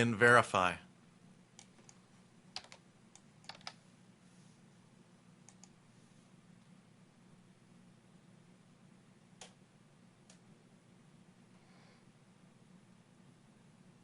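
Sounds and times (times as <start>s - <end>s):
low steady hum: 0.0s - 14.0s
faint computer clicks: 5.4s - 5.8s.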